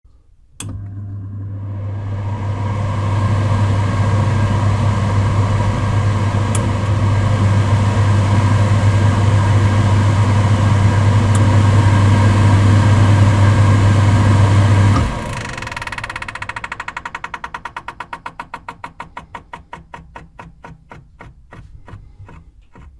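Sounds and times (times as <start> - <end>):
extractor fan whoosh and hum: 1.6 - 15.8
switch click: 6.2 - 7.6.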